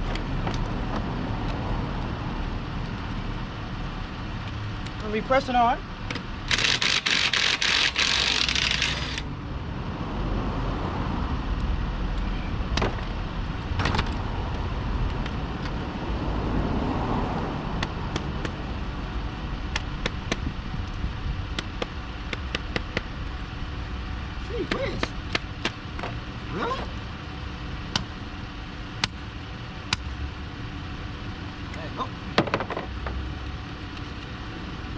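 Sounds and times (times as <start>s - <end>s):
van engine idling: 0.0s - 10.0s, 11.2s - 34.9s
loud hissing whir: 6.0s - 9.4s.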